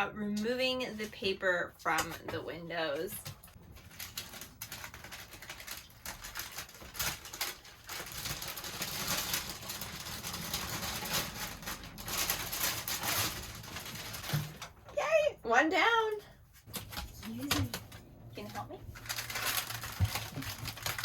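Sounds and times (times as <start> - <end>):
paper crackling and rustling: 2.9 - 14.9, 16.6 - 21.0
paper tape peeling and tearing: 3.7 - 14.7, 18.9 - 21.0.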